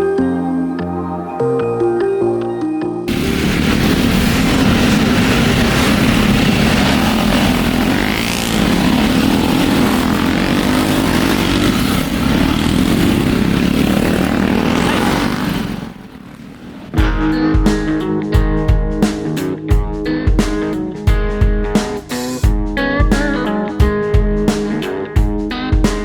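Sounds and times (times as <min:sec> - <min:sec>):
motorcycle engines running: 0:03.1 - 0:17.0
acoustic guitar music: 0:17.0 - 0:26.0.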